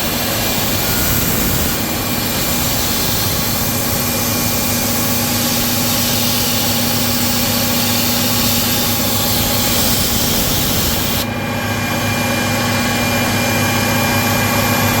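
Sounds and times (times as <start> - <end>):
high hiss: 0.0 - 11.2
milling machine running: 0.0 - 15.0.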